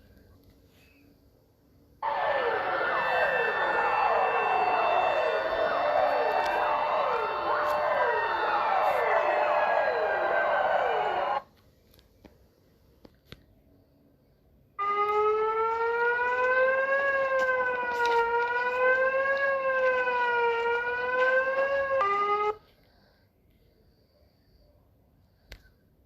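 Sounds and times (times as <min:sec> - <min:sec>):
electronic siren tone: 0:02.0 - 0:11.4, 0:14.8 - 0:22.6.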